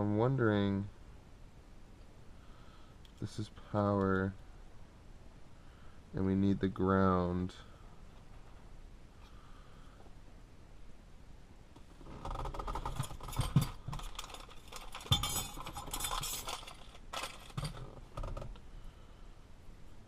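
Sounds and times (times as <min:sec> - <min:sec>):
small metal parts clinking: 0:12.4 - 0:18.4.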